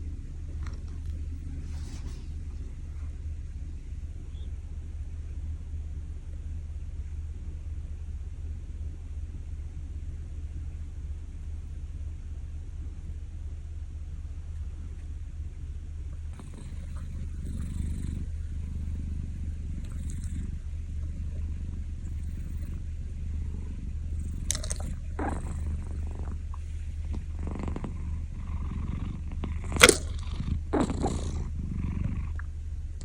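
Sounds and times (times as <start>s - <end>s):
cat snoring: 16.3s - 32.5s
sharp clicks or knocks: 29.8s - 30.2s.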